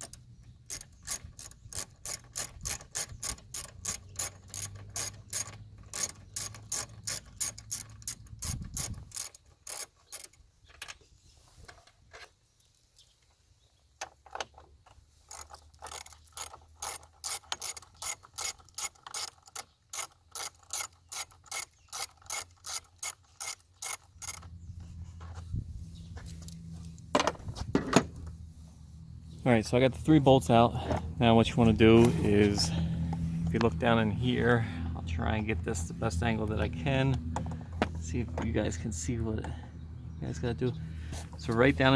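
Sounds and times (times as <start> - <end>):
socket ratchet clicking: 0.0 - 10.4, 15.3 - 24.6.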